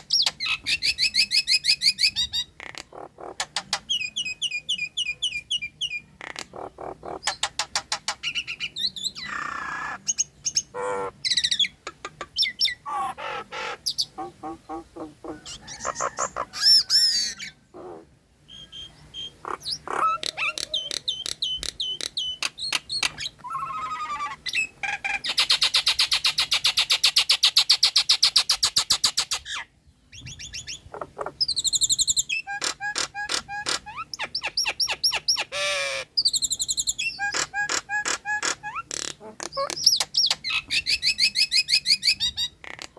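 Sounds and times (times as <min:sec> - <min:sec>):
bird clicks and chatter: 0:00.0 - 0:05.1, 0:05.8 - 0:10.7, 0:11.3 - 0:16.5, 0:19.4 - 0:29.5, 0:36.2 - 0:42.9.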